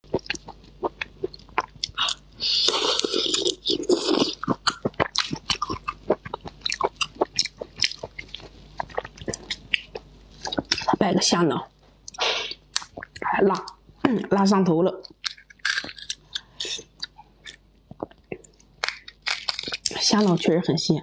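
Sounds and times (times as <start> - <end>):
person crunching food: 0.1 - 11.0, 12.1 - 13.8, 15.0 - 20.0
chewing clicks and mouth smacks: 15.0 - 20.0.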